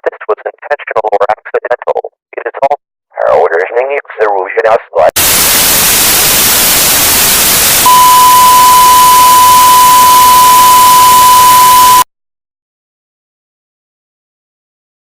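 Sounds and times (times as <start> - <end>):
static hiss: 5.2 - 8.7
high-pitched beep tone: 7.8 - 12.1.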